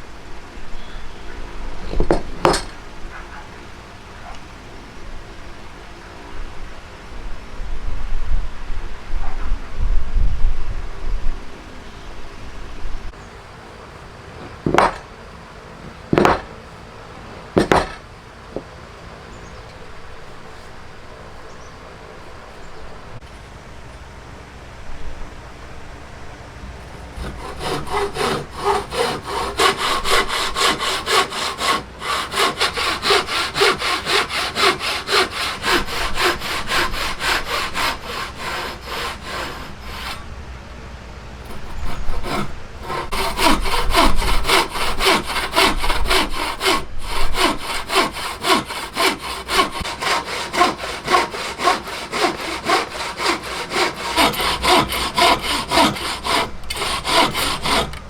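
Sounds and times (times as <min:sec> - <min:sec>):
hand saw cutting wood: 0:26.9 - 0:40.3, 0:41.4 - 0:58.0.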